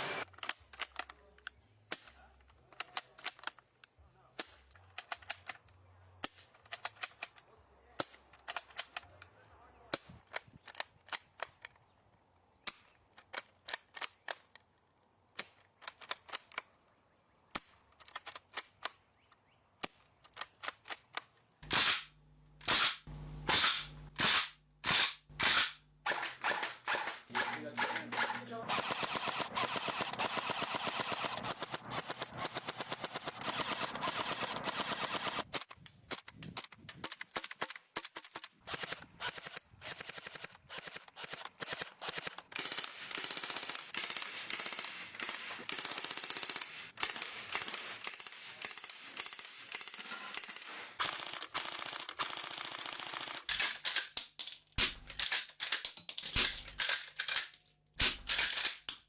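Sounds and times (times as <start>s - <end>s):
airsoft guns firing: 21.6s - 35.5s, 38.7s - 54.0s, 54.8s - 55.7s, 56.3s - 57.4s, 58.0s - 58.9s.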